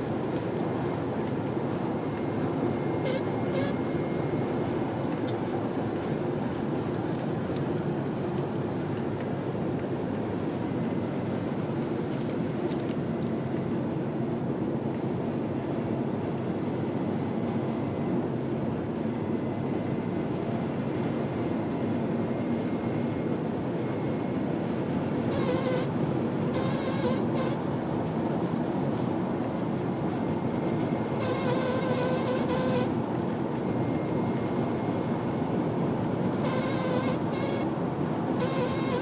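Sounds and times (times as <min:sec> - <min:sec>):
faint thin whine: 0:00.0 - 0:27.7, 0:29.4 - 0:39.0
car engine and road noise: 0:00.0 - 0:39.0
short buzzing noise: 0:25.3 - 0:25.9, 0:31.2 - 0:32.9, 0:36.4 - 0:37.7, 0:38.4 - 0:39.0.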